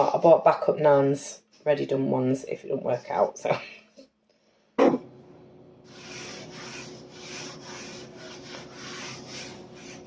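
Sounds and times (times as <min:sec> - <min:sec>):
dough rubbing on a board: 0:05.9 - 0:10.0.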